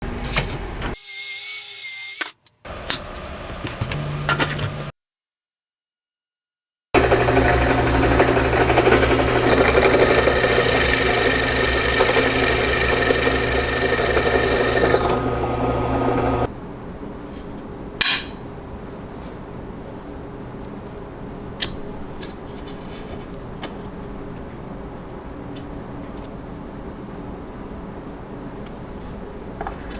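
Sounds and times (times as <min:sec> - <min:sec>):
power tool motor running: 0:07.0 - 0:16.5.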